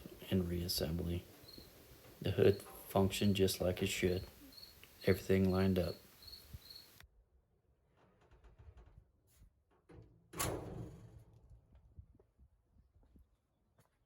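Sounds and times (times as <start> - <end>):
faint clicks: 4.2 - 7.0.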